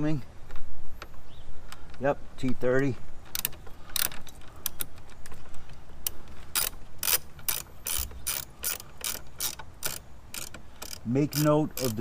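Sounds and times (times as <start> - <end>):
hand ratchet clicking: 6.0 - 12.0.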